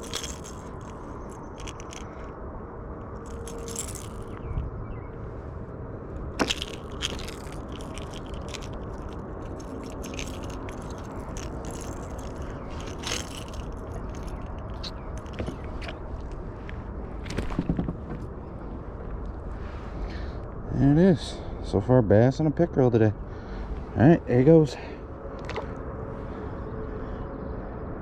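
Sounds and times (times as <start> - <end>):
kayak handling clicks and scrapes: 0.0 - 2.2, 6.4 - 16.4, 25.4 - 25.7
steady low rumble: 0.0 - 28.0.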